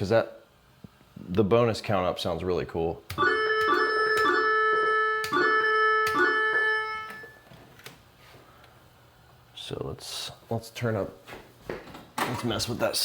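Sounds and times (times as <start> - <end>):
electronic organ-like tones: 3.1 - 7.4.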